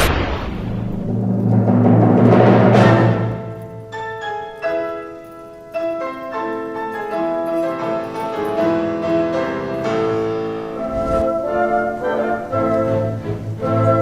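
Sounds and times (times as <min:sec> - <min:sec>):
symphony orchestra playing: 0:08.6 - 0:14.0.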